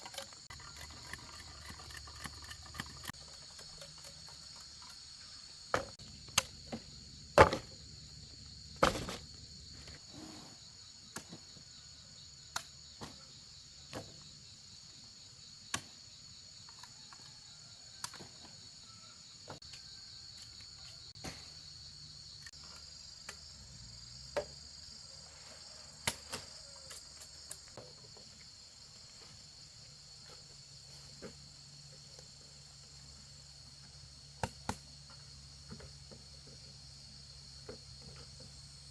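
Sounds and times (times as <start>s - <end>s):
high-pitched insect chorus: 0.0s - 38.9s.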